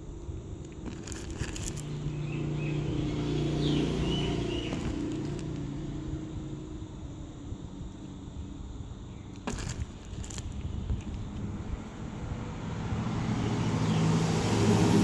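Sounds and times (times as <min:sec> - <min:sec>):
vehicle passing by: 0:01.5 - 0:06.8, 0:11.3 - 0:15.0.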